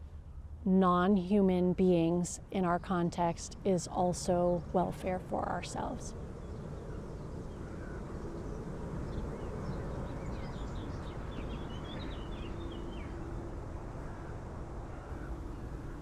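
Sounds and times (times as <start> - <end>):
faint hum: 0.0 - 16.0
bird chirping: 6.9 - 13.3.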